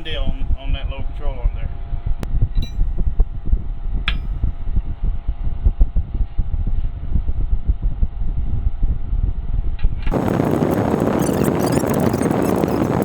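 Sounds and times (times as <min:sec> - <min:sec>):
low uneven rumble: 0:00.0 - 0:13.0
steady mechanical hum: 0:00.0 - 0:13.0
sharp metallic click: 0:02.6 - 0:03.0, 0:04.1 - 0:04.6.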